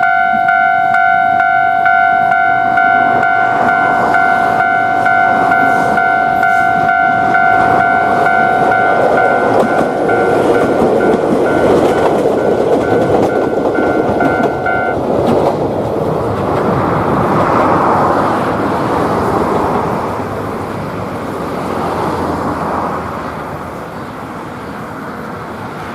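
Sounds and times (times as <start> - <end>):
level-crossing alarm ringing: 0.0 - 15.0
train rumble: 0.0 - 25.9.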